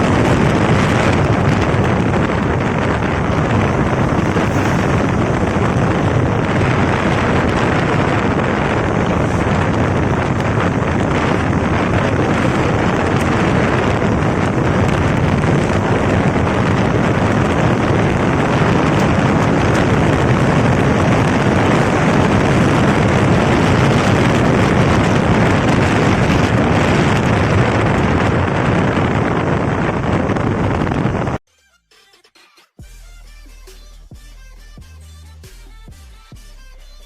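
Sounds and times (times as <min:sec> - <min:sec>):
motorcycle engine: 0:00.0 - 0:31.4
wind buffeting microphone: 0:00.0 - 0:31.4.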